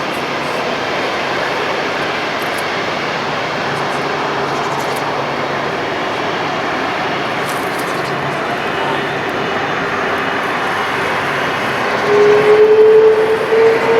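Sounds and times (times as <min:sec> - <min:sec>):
airliner engines rushing: 0:00.0 - 0:13.9.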